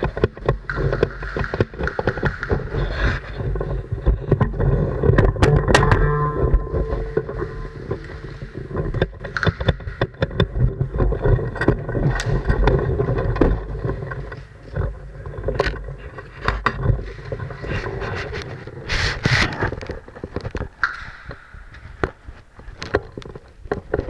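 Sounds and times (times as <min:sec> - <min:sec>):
sharp clicks and knocks: 0:04.0 - 0:14.1
low rumbling handling noise: 0:05.2 - 0:09.4.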